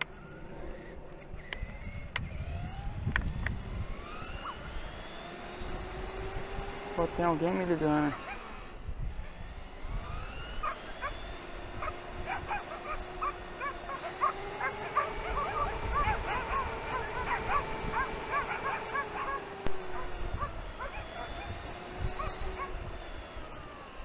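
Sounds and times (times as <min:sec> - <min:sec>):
rc truck electric motor whine: 0:00.0 - 0:24.0
dogs yapping: 0:04.4 - 0:04.7, 0:08.1 - 0:09.4, 0:10.4 - 0:22.8.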